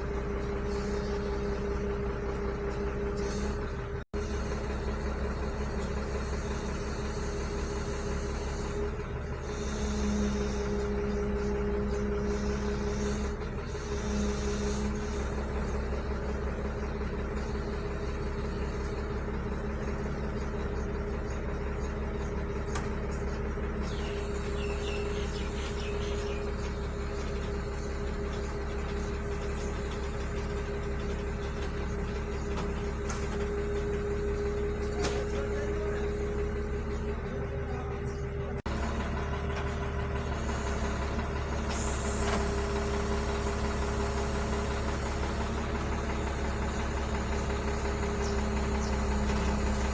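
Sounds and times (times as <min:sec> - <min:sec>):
diesel engine running: 0:00.0 - 0:49.9.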